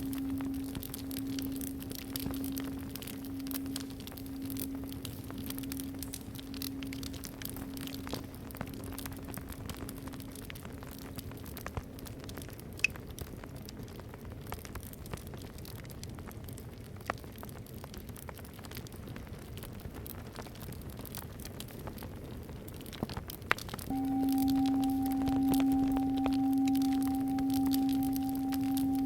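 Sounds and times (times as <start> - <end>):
singing bowl hum: 0.0 - 10.5, 23.9 - 29.0
campfire crackling and popping: 0.0 - 29.0.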